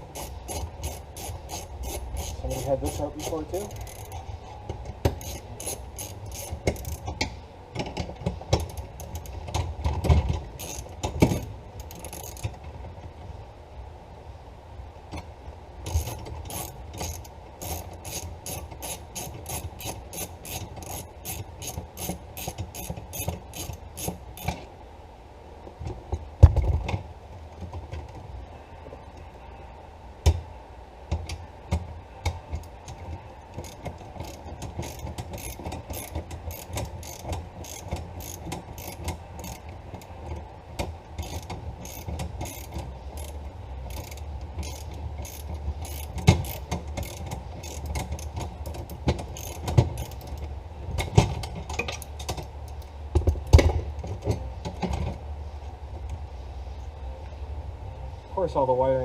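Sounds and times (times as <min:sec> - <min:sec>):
socket ratchet clicking: 0:00.0 - 0:04.2, 0:05.1 - 0:07.2, 0:10.6 - 0:12.5, 0:15.9 - 0:24.6, 0:33.5 - 0:40.1, 0:41.2 - 0:52.9.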